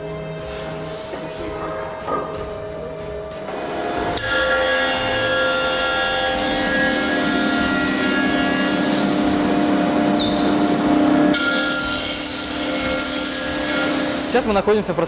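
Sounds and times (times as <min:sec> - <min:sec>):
woodworking machine hum and hiss: 0:03.5 - 0:14.7.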